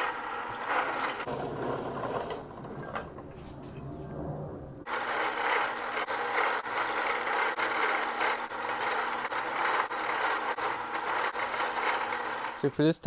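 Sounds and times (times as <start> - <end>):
power tool rasping wood: 0.0 - 1.4, 4.9 - 12.7
motor hum: 4.8 - 12.7.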